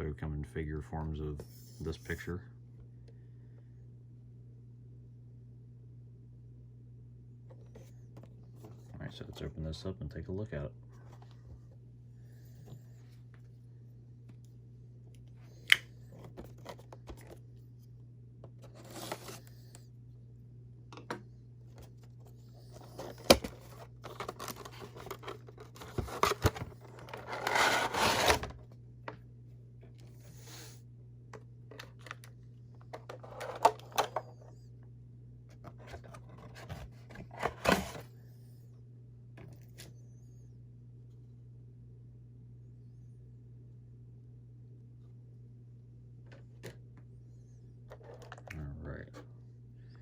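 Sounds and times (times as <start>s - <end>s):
cardboard and plastic clicks and scrapes: 16.1s - 17.4s, 18.4s - 19.5s, 21.7s - 28.6s, 31.7s - 34.3s, 35.5s - 38.1s
packaging tearing and rustling: 22.9s - 28.5s.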